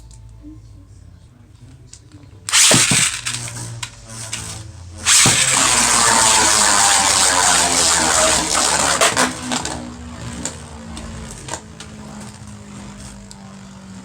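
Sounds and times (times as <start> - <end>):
spinning tops clacking together: 2.5 - 9.3
spinning tops whirring and scraping: 2.5 - 14.0.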